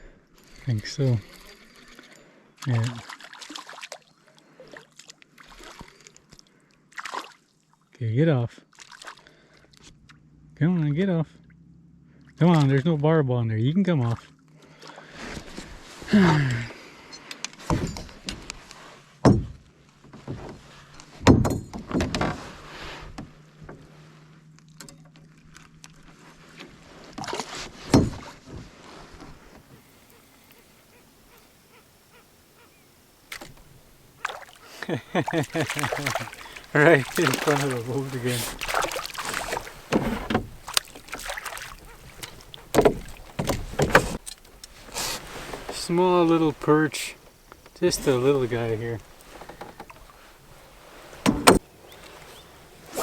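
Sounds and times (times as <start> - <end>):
knocks and clatters in boat: 17.6 - 24.0, 24.7 - 29.7, 35.2 - 52.4
faint steady hum: 29.2 - 53.0.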